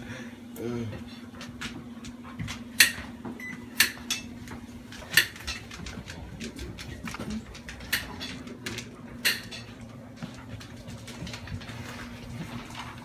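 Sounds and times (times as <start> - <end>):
cookware clattering: 6.8 - 9.9.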